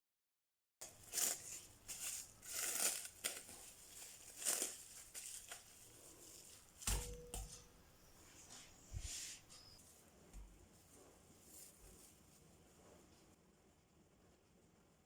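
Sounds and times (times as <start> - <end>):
rustling crinkling handling noises: 0.8 - 13.4.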